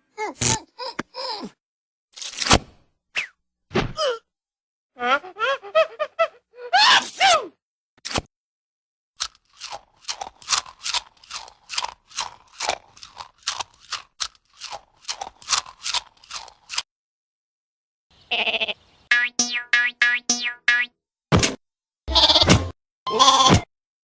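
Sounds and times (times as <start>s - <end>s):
cartoon crunches: 2.2s - 3.3s, 9.2s - 16.9s.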